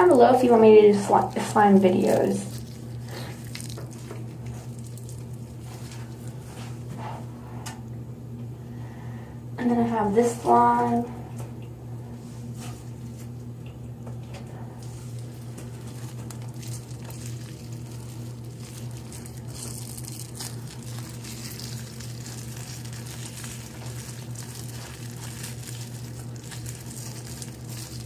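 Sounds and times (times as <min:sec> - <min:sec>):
slime crackling: 0:00.0 - 0:06.7, 0:14.8 - 0:28.0
low steady hum: 0:00.0 - 0:28.0.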